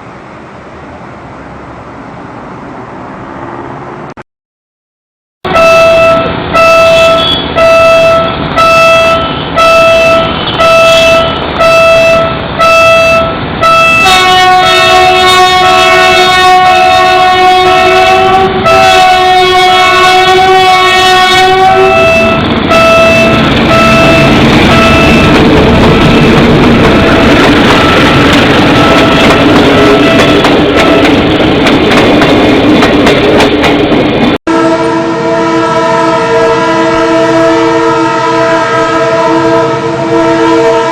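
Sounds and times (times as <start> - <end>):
running train rumble: 0.0 - 4.2, 5.5 - 40.9
train chord horn blasts: 5.5 - 31.2, 34.5 - 40.9.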